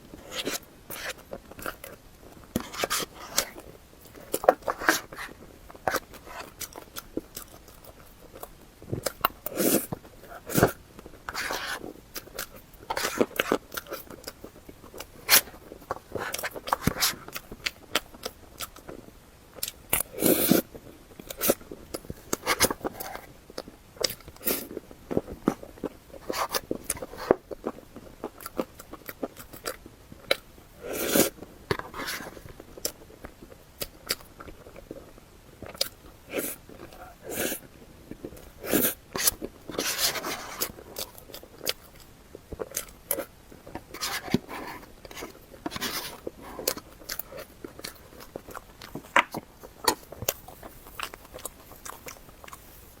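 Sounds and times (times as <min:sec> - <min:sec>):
person biting and chewing food: 0:21.2 - 0:52.9.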